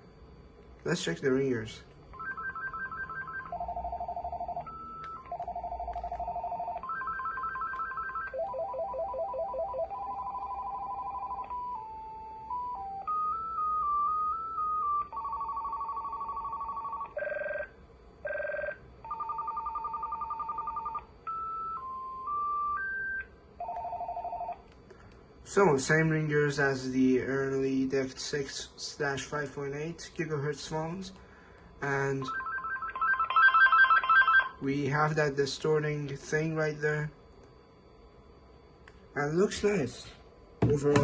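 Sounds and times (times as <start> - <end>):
cordless phone ringer tones: 2.1 - 17.6, 18.3 - 24.6, 32.3 - 34.6.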